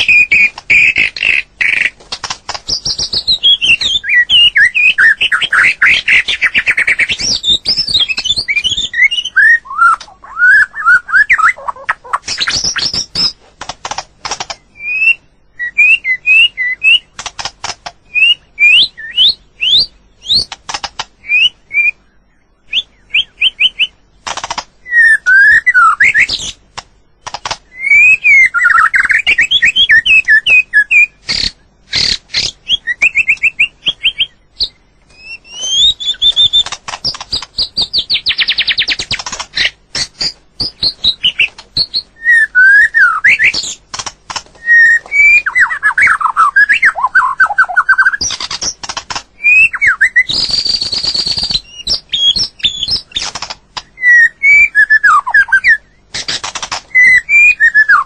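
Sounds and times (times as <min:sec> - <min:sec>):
bird singing whistled phrases: 0:00.0 - 0:01.9, 0:02.7 - 0:13.4, 0:14.7 - 0:17.1, 0:18.1 - 0:20.5, 0:21.2 - 0:24.0, 0:24.8 - 0:26.6, 0:27.7 - 0:36.7, 0:40.6 - 0:43.8, 0:44.6 - 0:48.8, 0:49.4 - 0:53.2, 0:54.0 - 0:56.0, 0:56.9 - 0:58.0
bird fast trill: 0:00.0 - 0:13.4, 0:44.6 - 0:58.0
bird sharp clicks: 0:09.9 - 0:10.2, 0:11.2 - 0:14.7, 0:24.2 - 0:24.7, 0:25.5 - 0:27.7, 0:35.4 - 0:42.1, 0:43.2 - 0:53.9, 0:56.1 - 0:58.0.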